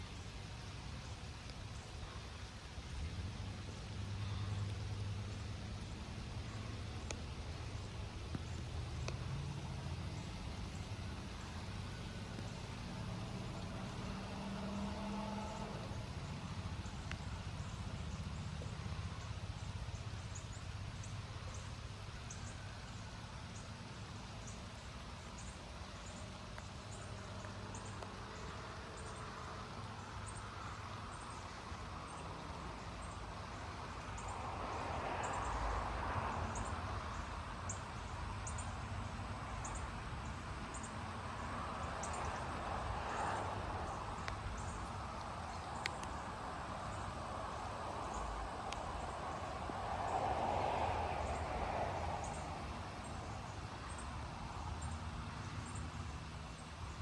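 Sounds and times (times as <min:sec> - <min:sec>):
insect ticking calls: 0:41.8 - 0:56.6.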